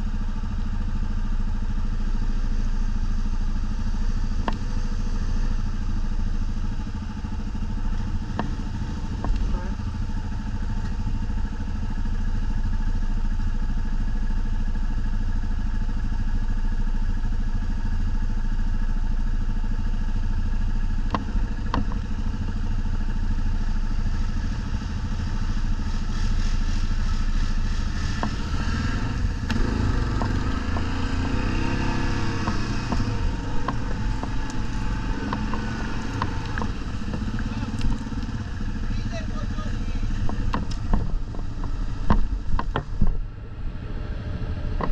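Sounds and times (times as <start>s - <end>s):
quad bike engine revving: 24.2s - 43.1s.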